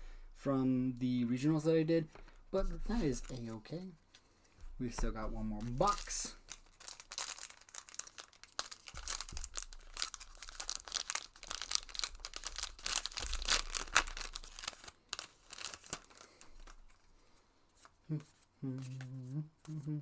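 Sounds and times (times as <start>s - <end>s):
plastic packaging crinkling and tearing: 2.2s - 3.9s, 5.6s - 17.1s.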